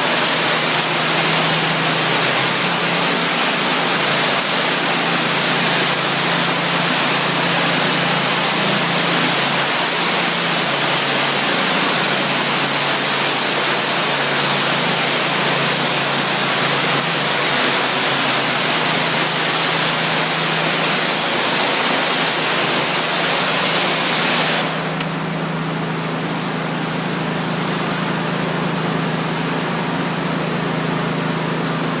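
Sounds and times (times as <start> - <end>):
pressure washer spray hissing: 0.0 - 25.0
engine and pump humming: 0.0 - 32.0.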